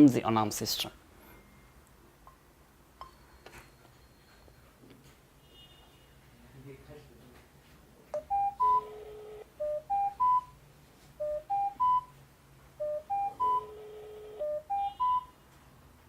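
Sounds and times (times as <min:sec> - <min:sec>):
phone ringback tone: 0:08.2 - 0:10.6, 0:11.2 - 0:12.1, 0:12.8 - 0:15.4.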